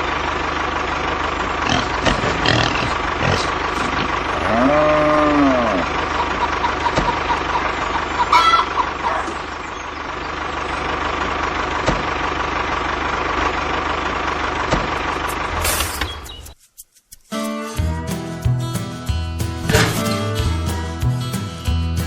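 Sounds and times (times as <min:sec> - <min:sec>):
chicken clucking: 0:05.3 - 0:09.9.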